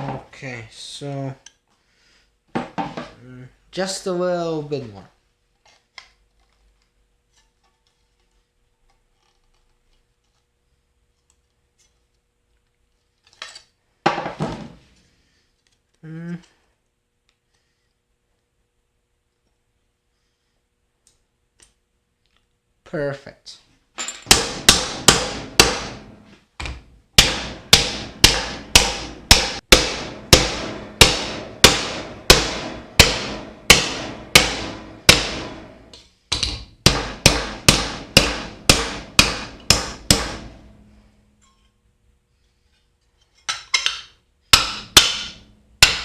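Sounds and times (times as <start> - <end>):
hammer on thin metal sheet: 24.3 - 26.1, 27.2 - 35.9, 36.8 - 40.7, 44.5 - 46.0.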